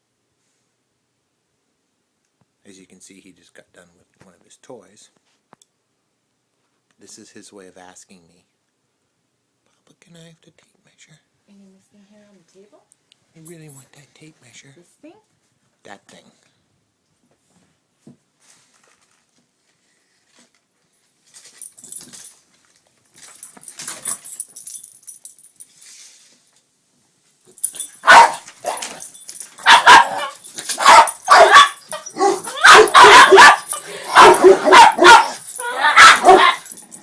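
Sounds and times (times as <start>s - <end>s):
dog barking and yipping: 27.6s - 37.0s.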